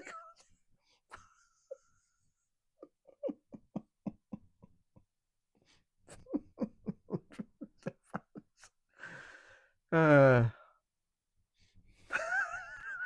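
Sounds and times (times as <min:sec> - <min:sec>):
person laughing: 0:01.1 - 0:05.0, 0:06.1 - 0:08.8, 0:12.1 - 0:13.0.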